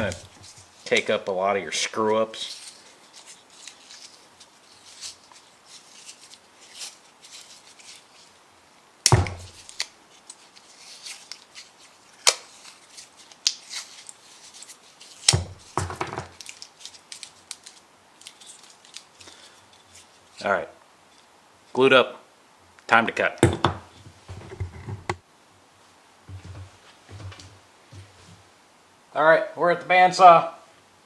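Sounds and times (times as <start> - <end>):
tape being pulled and wrapped: 0.0 - 1.1, 2.3 - 8.4, 9.0 - 20.4
rustling handling noise: 0.0 - 21.3, 26.3 - 28.5
sharp knocks of wooden blocks: 9.1 - 9.5, 15.3 - 16.4, 23.4 - 25.2.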